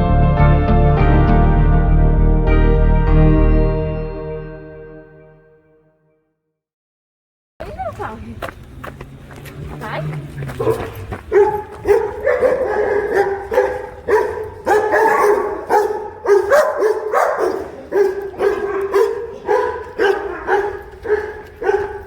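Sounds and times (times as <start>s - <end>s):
dog barking: 9.8s - 22.0s.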